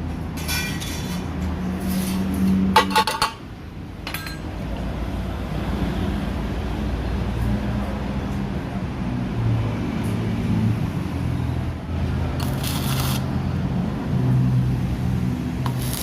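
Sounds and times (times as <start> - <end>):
welder humming: 12.4 - 13.3, 15.6 - 16.0
welding arc crackling: 12.4 - 13.3, 15.6 - 16.0.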